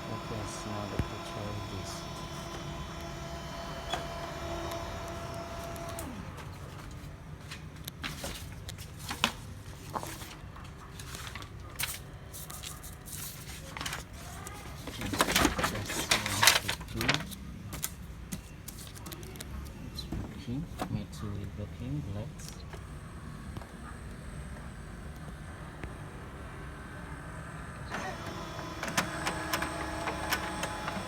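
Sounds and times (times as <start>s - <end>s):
printer motor whine: 0.0s - 7.2s, 14.8s - 17.3s, 19.4s - 31.0s.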